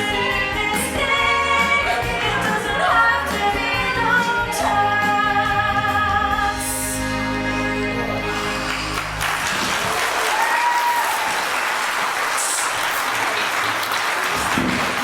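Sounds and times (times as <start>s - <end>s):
audience clapping: 8.3s - 15.0s.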